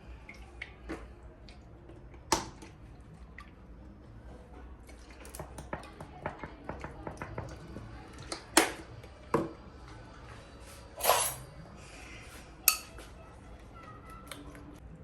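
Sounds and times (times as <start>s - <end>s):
kitchen handling clatter: 11.0s - 11.4s.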